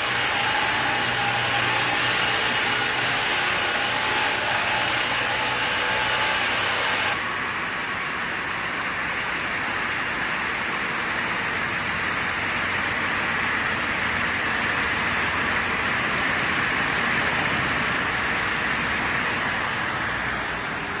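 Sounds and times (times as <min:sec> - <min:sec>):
woodworking machinery hissing: 0:00.0 - 0:07.6.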